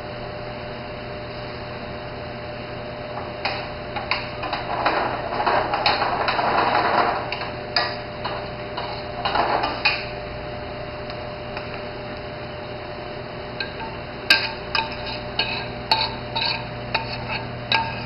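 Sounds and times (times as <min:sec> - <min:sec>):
stirring and scraping: 0:03.5 - 0:10.1, 0:13.6 - 0:18.0.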